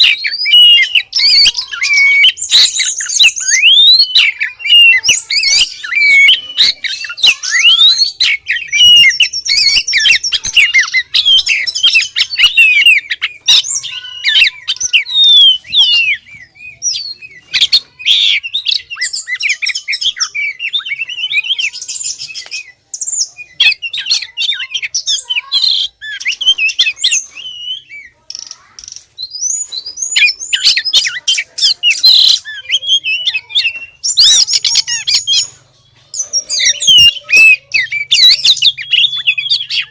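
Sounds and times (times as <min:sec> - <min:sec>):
bird singing chirps and whistles: 0:00.0 - 0:39.9.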